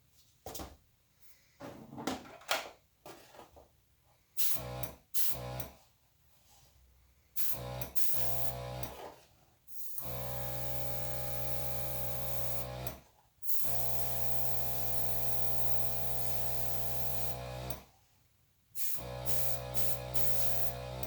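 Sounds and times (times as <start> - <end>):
air compressor motor hum: 4.4 - 5.8, 7.4 - 9.0, 9.7 - 17.8, 18.8 - 21.0.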